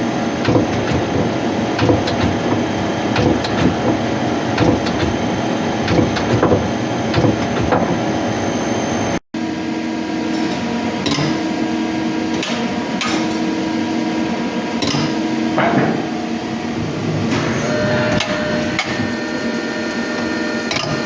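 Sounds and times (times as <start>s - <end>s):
humming tone: 0.0s - 21.0s
lathe running: 0.0s - 21.0s
sharp clicks and knocks: 0.4s - 8.2s, 11.0s - 11.4s, 14.8s - 16.1s.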